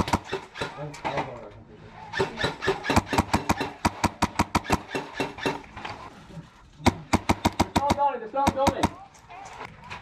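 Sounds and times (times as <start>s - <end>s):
airsoft guns firing: 0.0s - 0.8s, 2.2s - 5.6s, 6.9s - 9.0s.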